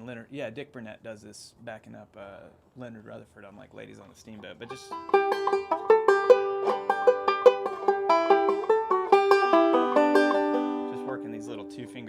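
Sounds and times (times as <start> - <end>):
banjo picking: 4.0 - 12.0.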